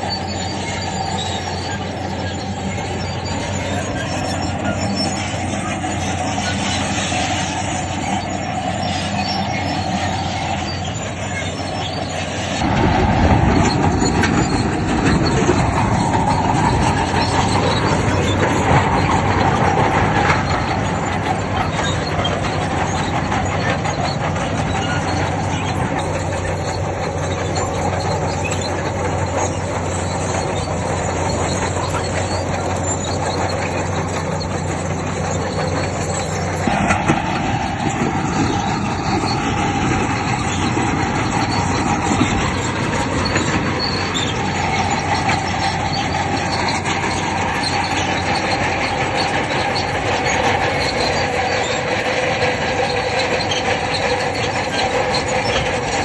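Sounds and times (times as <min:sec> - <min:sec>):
bulldozer engine running: 0:00.0 - 0:56.0
crawler tracks clanking: 0:00.0 - 0:56.0.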